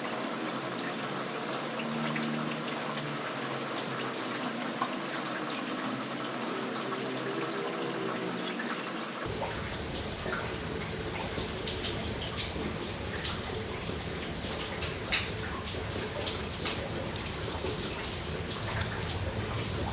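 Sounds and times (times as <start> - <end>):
small splashes and clicks: 0.0 - 5.8, 11.2 - 19.9
running water from tap: 0.0 - 19.9.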